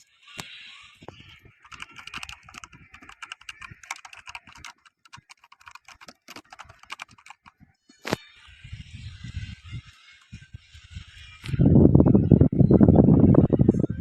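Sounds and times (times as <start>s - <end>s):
mechanical keyboard key clicks: 1.6s - 7.5s.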